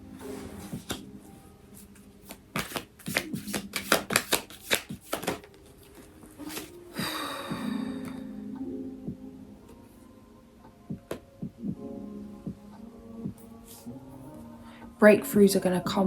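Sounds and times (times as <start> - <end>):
soft music drone: 0.0 - 16.0
cards being shuffled: 2.2 - 6.7.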